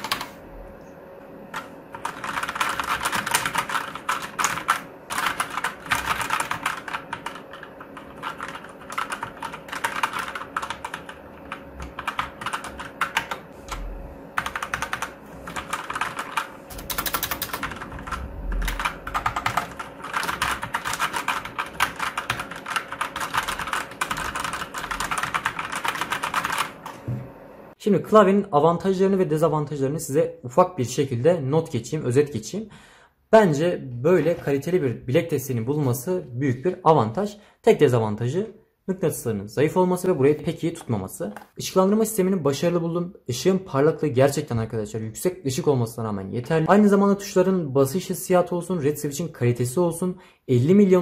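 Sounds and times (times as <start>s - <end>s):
typing on mechanical keyboard: 0.0s - 0.4s, 1.5s - 13.8s, 14.4s - 27.0s.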